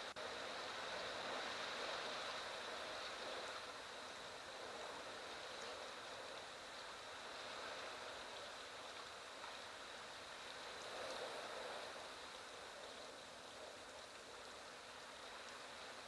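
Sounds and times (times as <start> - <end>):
wind through grass: 0.0 - 16.0.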